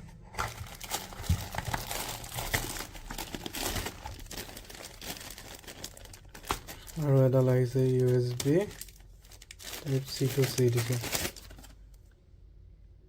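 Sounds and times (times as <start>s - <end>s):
packaging crinkling: 0.3s - 11.9s.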